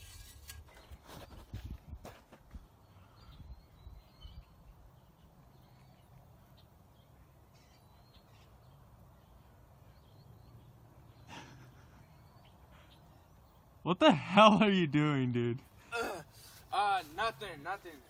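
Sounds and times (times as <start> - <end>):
distant birds chirping: 2.4 - 14.1.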